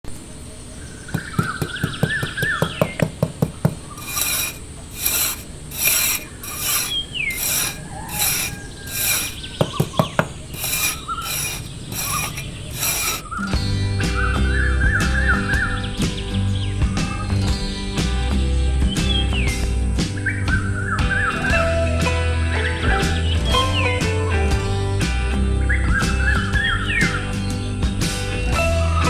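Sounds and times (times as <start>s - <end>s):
small birds chirping: 0.1s - 28.5s
rasping scraping strokes: 1.2s - 13.3s
music: 13.3s - 29.0s.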